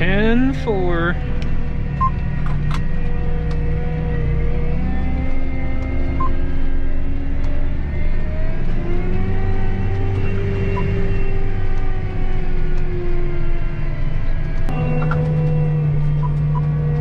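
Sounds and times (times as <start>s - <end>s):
deep diesel rumble: 0.0s - 17.0s
machinery whining tones: 0.0s - 17.0s.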